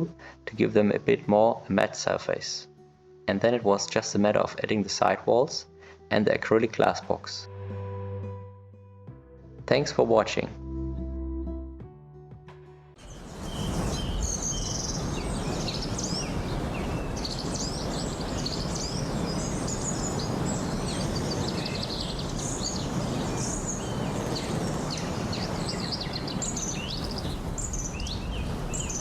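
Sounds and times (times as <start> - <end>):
small birds chirping: 13.0 - 29.0
steady rushing background noise: 13.1 - 29.0.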